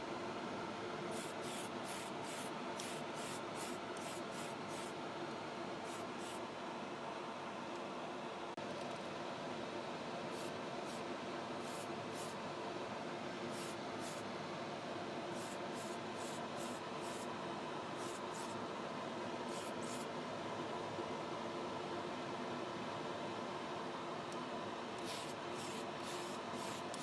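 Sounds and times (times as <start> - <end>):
spray paint hisses: 25.0 - 27.0.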